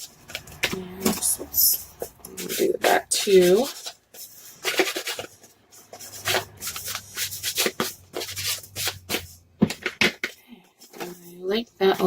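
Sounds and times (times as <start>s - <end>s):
ink pad scuffing on paper card: 0.5s - 9.4s.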